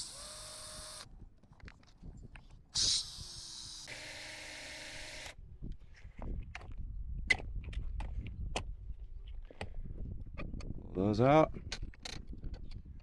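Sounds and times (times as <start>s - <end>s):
cordless drill running: 0.0s - 1.1s, 2.8s - 5.4s.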